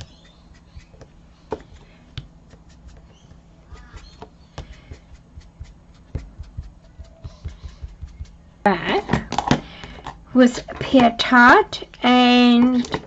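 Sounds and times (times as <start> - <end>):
faint low hum: 0.0 - 13.0
soft taps of ink daubers: 0.9 - 8.4.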